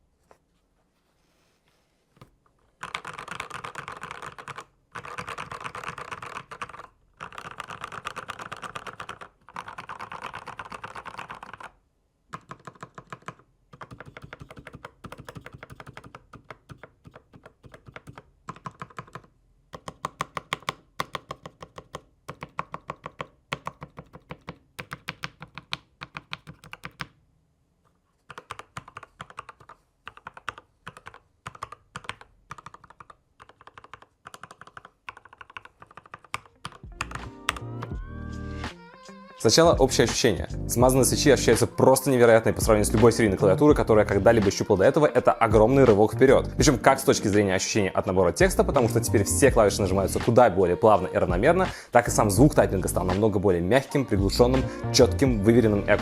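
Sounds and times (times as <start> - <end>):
fast typing on mechanical keyboard: 2.8 - 27.2, 28.3 - 38.0.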